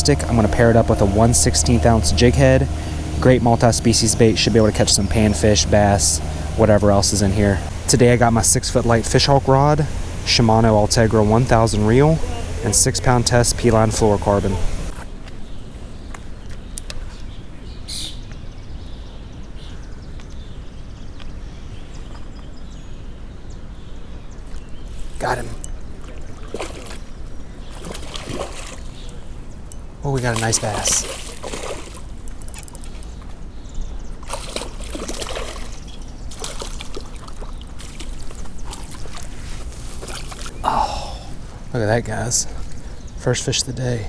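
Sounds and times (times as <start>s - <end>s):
low outdoor rumble: 0.0s - 16.4s
small birds chirping: 0.0s - 44.0s
fish splashing in water: 26.0s - 29.2s, 30.2s - 33.4s, 34.2s - 40.6s.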